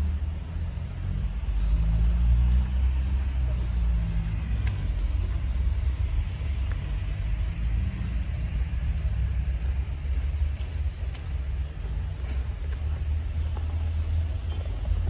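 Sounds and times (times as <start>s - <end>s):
wind buffeting microphone: 2.3s - 15.0s.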